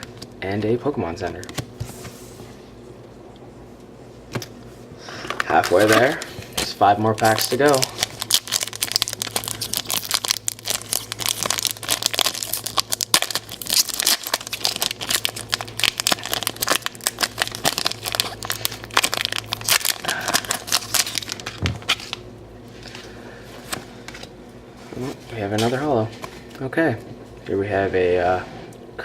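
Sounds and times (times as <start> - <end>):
foil wrapper crinkling and tearing: 5.5 - 22.2.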